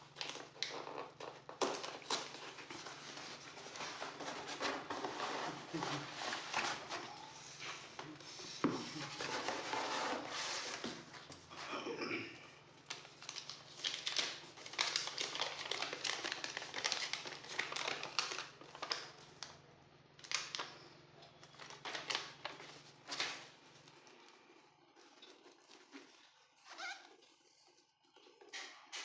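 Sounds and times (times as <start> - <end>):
plastic packaging crinkling: 0.0 - 7.9, 12.8 - 19.6, 20.2 - 20.8, 21.4 - 27.3.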